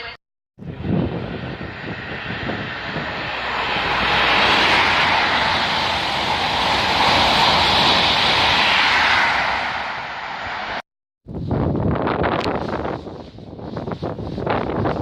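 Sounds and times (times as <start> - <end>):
train passing at speed: 0.6 - 10.9.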